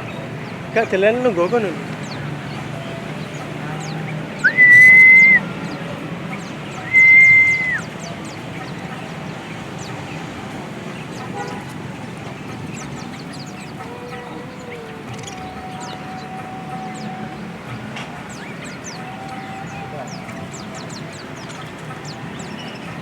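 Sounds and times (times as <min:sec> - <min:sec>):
small birds chirping: 0:00.0 - 0:23.0
long whistle notes: 0:04.4 - 0:05.4, 0:06.8 - 0:07.8.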